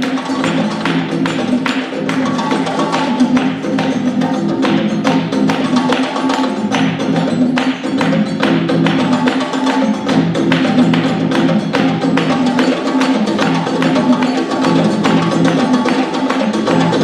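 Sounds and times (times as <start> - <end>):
percussion beat: 0.0 - 17.0.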